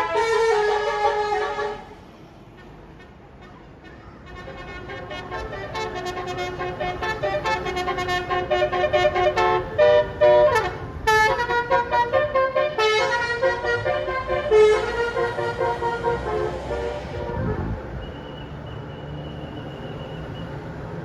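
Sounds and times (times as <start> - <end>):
multi-tone musical bus horn: 0.0 - 20.5.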